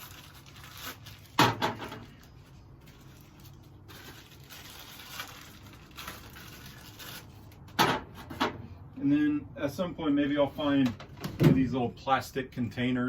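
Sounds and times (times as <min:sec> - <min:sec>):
plastic bag rustling: 0:00.0 - 0:07.8.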